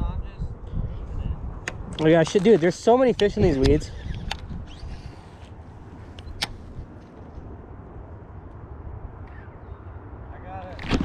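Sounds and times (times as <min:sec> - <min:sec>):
wind rumble on microphone: 0:00.0 - 0:11.0
sharp click: 0:06.2 - 0:06.6.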